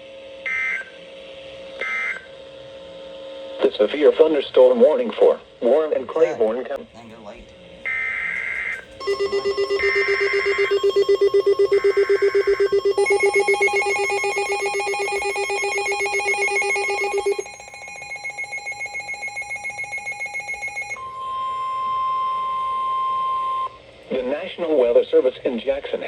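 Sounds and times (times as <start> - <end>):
steady single-pitch warning tone: 7.9 - 23.8
pulsing electronic alert tone: 9.0 - 21.0.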